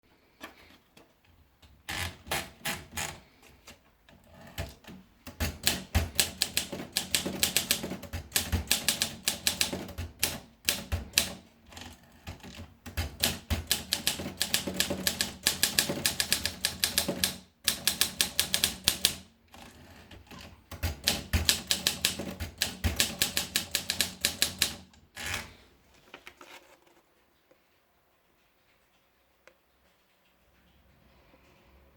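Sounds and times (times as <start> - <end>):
typewriter keystroke clacks: 1.8 - 25.6.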